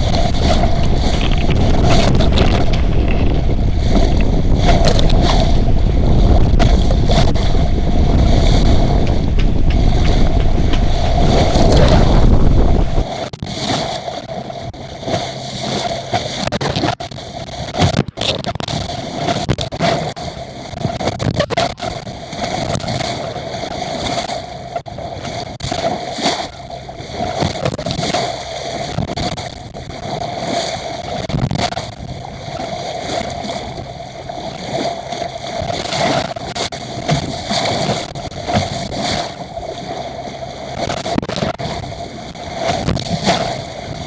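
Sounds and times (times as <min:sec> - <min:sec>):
wind buffeting microphone: 0:00.0 - 0:13.6, 0:28.8 - 0:44.0
water rushing along hull: 0:00.0 - 0:44.0.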